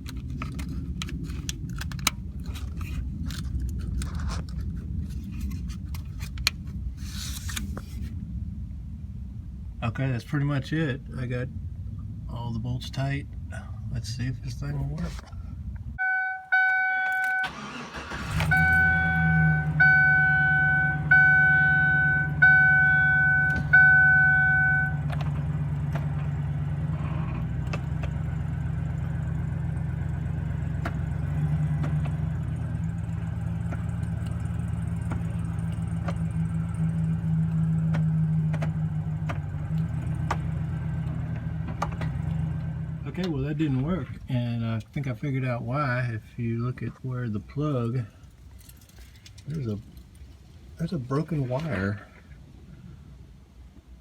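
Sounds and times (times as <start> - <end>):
truck engine cranking and idling: 14.6 - 46.0
dashboard warning chime: 16.0 - 25.2.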